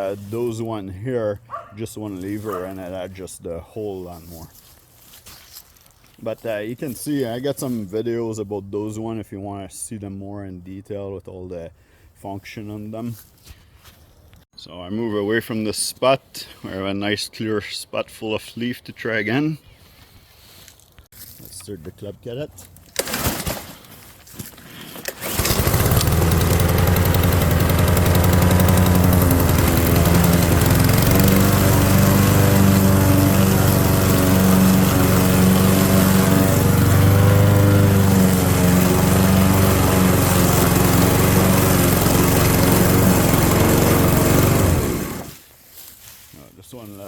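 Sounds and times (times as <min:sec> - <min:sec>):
mower picking up leaves: 0:22.6 - 0:47.0
lawn mower engine running: 0:25.0 - 0:45.4.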